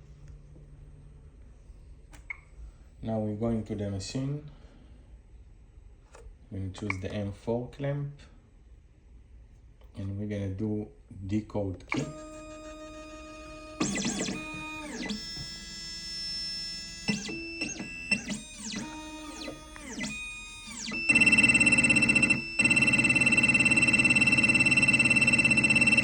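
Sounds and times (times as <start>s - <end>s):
steady pulsing machine whine: 12.0s - 26.0s
stepper motors whining: 12.0s - 26.0s.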